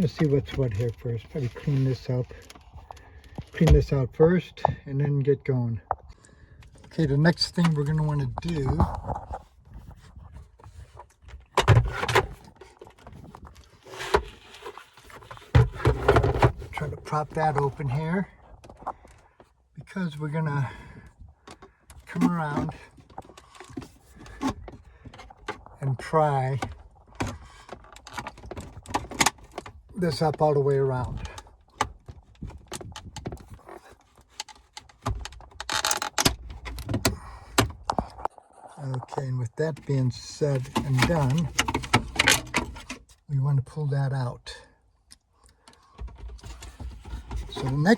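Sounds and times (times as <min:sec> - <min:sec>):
scraping rustle: 0:07.6 - 0:18.0.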